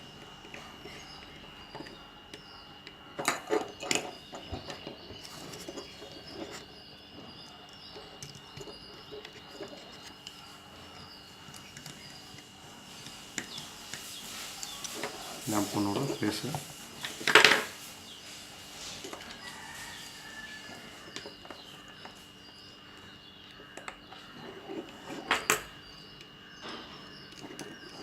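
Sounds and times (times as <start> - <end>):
steady high-pitched whine: 0.0 - 28.0.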